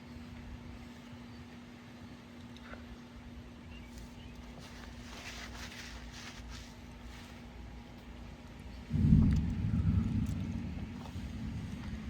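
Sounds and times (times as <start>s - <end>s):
thunder rumbling: 8.9s - 12.0s.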